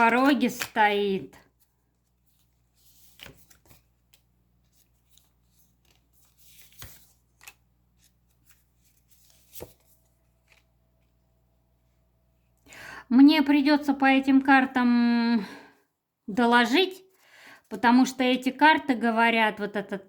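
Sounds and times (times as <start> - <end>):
cards rustling: 0.0 - 11.2.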